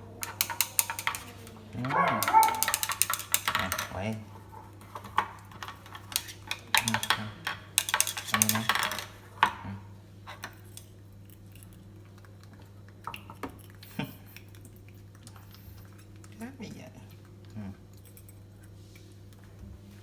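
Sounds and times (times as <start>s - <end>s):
spoon clinking against a dish: 0.2s - 3.9s, 5.1s - 9.1s.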